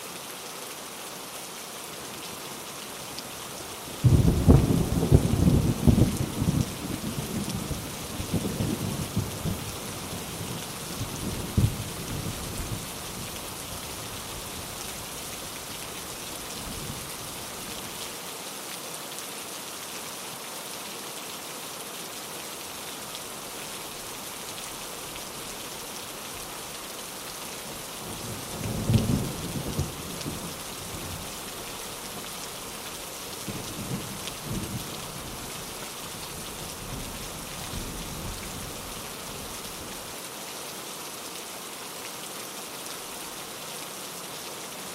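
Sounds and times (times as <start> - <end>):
steady rain: 0.0 - 44.9
thunder rumbling: 4.0 - 9.6.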